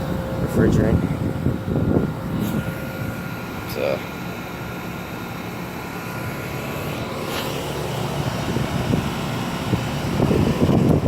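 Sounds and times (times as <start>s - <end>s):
gusty low rumble: 0.0s - 3.7s, 7.0s - 11.0s
air conditioner compressor hum: 0.0s - 11.0s
condenser fan rushing: 0.0s - 11.0s.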